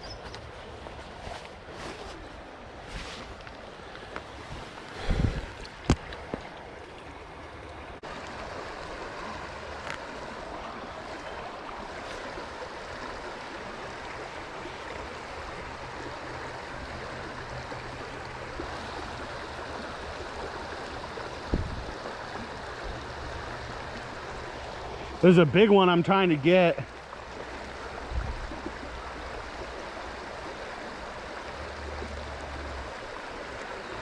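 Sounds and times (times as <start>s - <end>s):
stream rushing: 0.0s - 34.0s
low bump: 21.5s - 21.9s.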